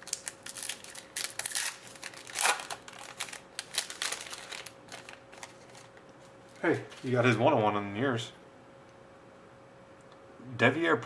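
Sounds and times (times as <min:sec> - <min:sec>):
cards and packaging clicking: 0:00.0 - 0:06.0
packaging rustling: 0:00.0 - 0:07.2
faint steady hum: 0:00.0 - 0:11.0.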